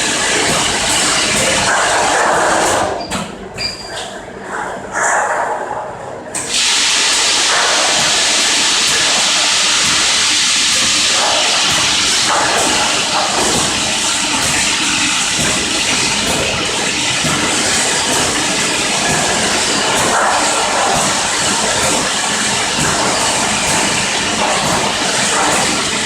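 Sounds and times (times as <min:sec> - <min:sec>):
filling machine hissing: 0:06.4 - 0:26.0.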